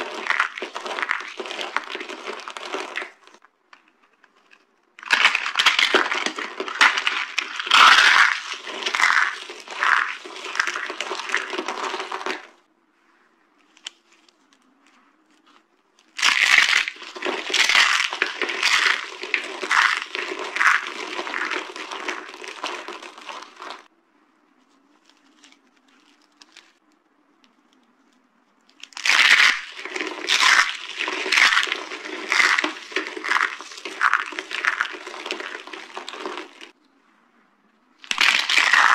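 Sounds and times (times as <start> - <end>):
dry soap crackling and crunching: 0.0 - 36.8, 38.0 - 38.9.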